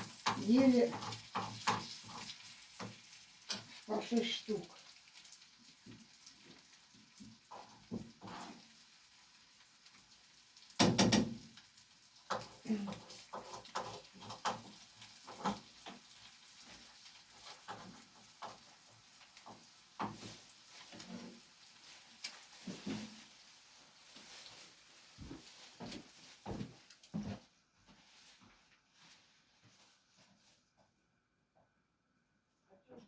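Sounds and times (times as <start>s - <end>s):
small clicks and knocks: 12.3s - 16.0s.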